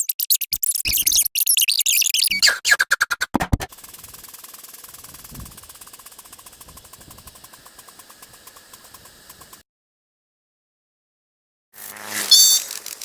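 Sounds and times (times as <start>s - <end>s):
fast mechanical clicking: 3.6s - 9.6s
hiss: 3.7s - 9.6s.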